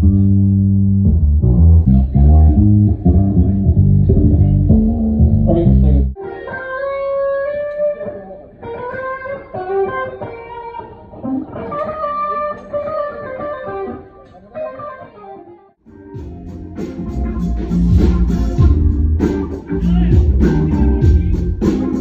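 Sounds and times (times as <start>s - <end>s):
bass guitar: 0.0s - 6.2s, 15.9s - 22.0s
electric guitar melody: 0.0s - 22.0s
drums: 16.0s - 22.0s.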